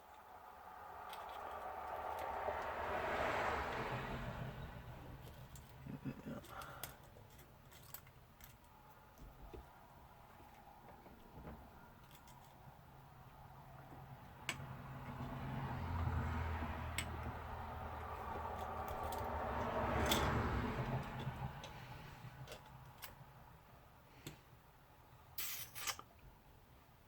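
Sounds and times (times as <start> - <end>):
small parts clicking: 1.0 - 2.8, 5.2 - 9.3, 18.0 - 21.8, 25.4 - 26.2.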